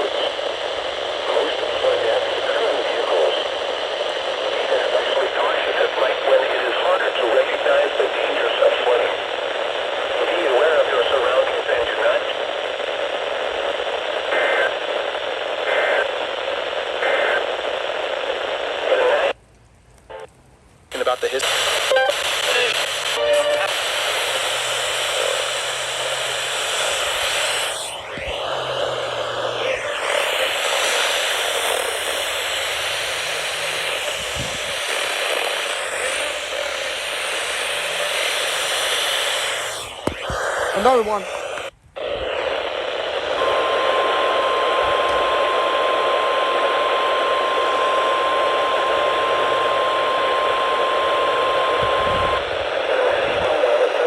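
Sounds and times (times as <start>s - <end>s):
radio static hiss: 0.0s - 19.4s, 20.9s - 54.0s.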